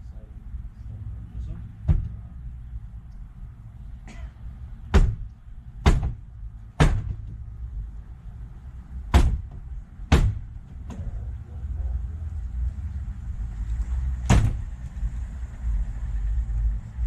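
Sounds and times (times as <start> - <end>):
sledgehammer striking wooden wall: 4.9 - 6.2, 6.8 - 7.3, 9.1 - 10.6.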